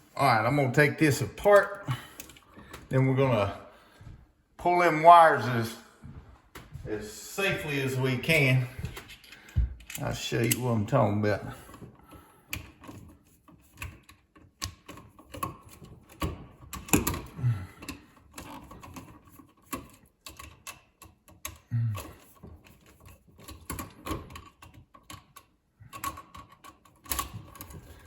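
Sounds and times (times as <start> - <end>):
screwdriver clicking and scraping: 8.9 - 10.8, 11.7 - 28.0.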